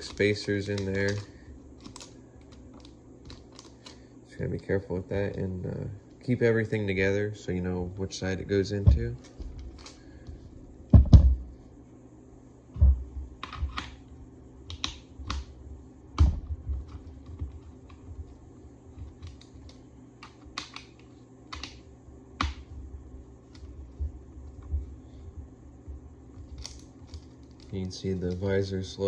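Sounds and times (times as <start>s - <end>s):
dull thump: 10.9s - 11.5s.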